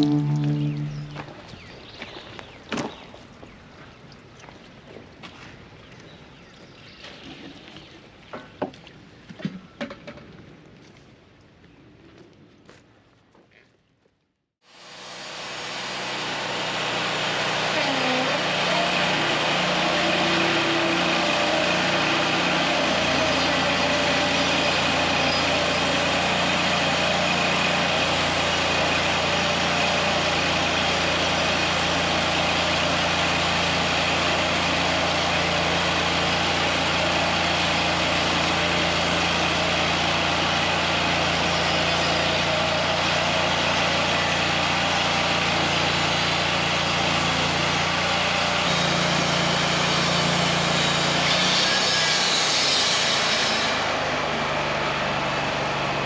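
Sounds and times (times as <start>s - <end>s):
band sawmill running: 14.7s - 56.0s.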